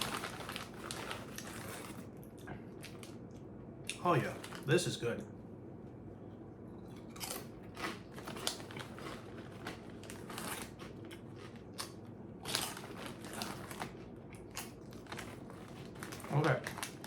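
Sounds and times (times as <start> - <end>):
corn snacks crunching: 0.0 - 3.2, 6.9 - 17.0.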